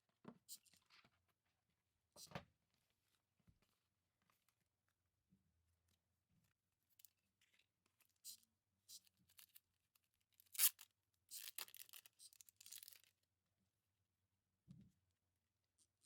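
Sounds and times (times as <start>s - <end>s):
packaging tearing: 10.4s - 13.1s.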